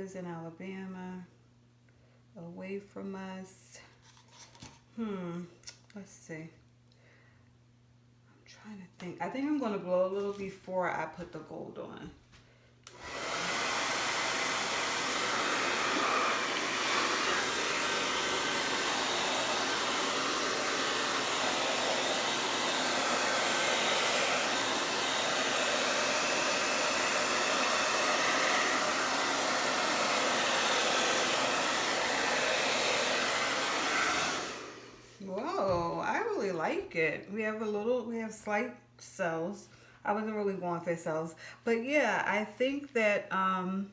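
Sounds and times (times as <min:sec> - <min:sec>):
hair dryer blowing: 0:12.8 - 0:36.3.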